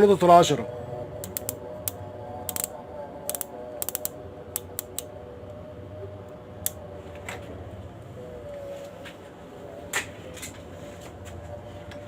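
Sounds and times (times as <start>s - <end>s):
scope turret detent clicks: 1.2s - 2.7s, 3.3s - 5.1s.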